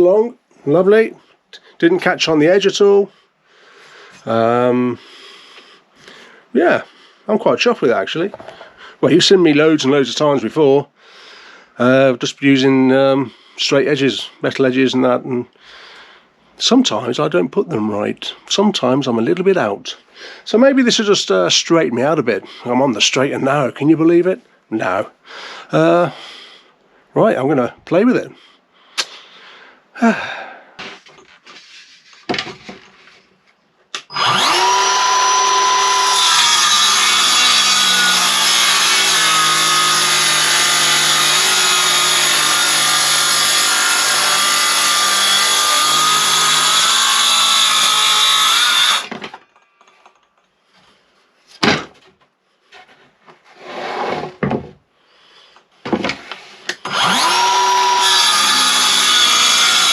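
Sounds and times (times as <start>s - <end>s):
circular saw spinning up: 34.0s - 49.1s, 56.8s - 59.9s
circular saw cutting wood: 34.0s - 49.4s, 56.3s - 59.9s.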